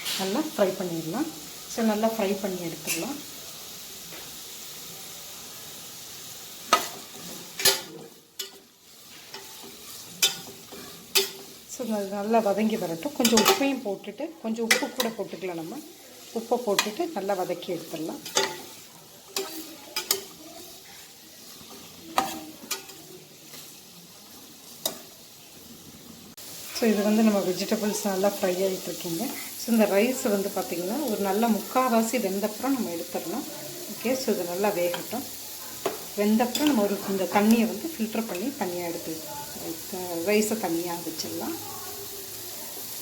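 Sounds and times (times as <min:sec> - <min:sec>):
vegetables sizzling in oil: 0:00.0 - 0:43.0
utensil clacking against a pan: 0:06.7 - 0:11.6, 0:12.6 - 0:13.8, 0:14.5 - 0:15.7, 0:16.6 - 0:20.7, 0:21.6 - 0:23.6
spatula clinking on pan: 0:09.3 - 0:11.6, 0:13.2 - 0:13.8, 0:14.6 - 0:15.2, 0:18.2 - 0:20.4.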